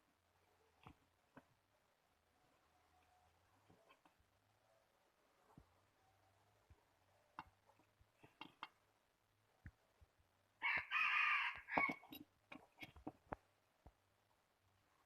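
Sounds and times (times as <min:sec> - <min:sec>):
rooster crowing: 0:10.6 - 0:12.0.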